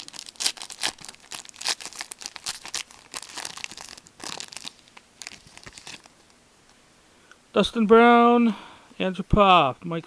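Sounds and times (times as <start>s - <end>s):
foil wrapper crinkling and tearing: 0.0s - 6.3s.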